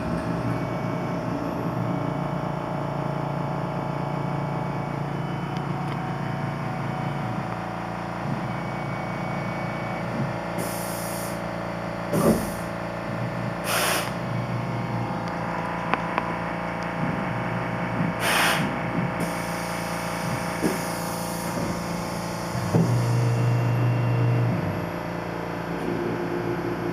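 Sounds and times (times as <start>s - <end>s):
milling machine motor hum: 0.0s - 10.6s, 11.3s - 26.9s
short hissing bursts: 13.6s - 14.2s, 18.2s - 20.1s.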